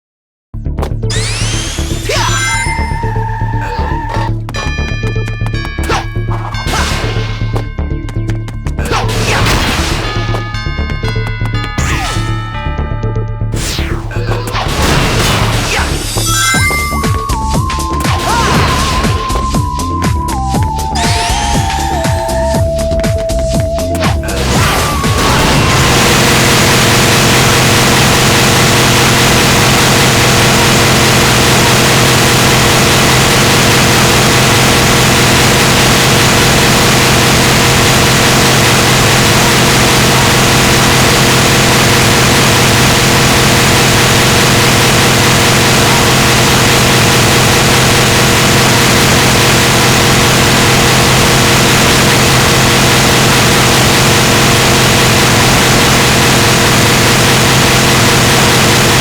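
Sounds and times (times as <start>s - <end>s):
vehicle drone: 1.1s - 4.3s, 24.0s - 59.0s.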